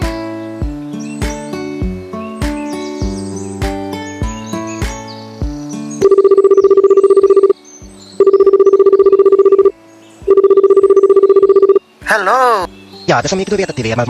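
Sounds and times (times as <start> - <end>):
trilling telephone ring: 10.3 - 11.8.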